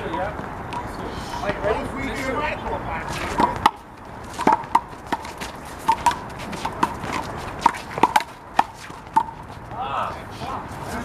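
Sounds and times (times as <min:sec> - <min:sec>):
footsteps on court: 0:03.0 - 0:11.0.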